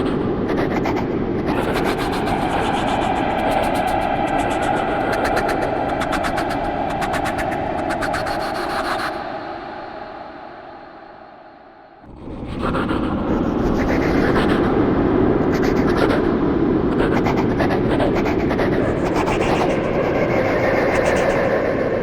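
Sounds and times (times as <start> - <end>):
creepy echoing noisy swell: 0.0 - 15.9.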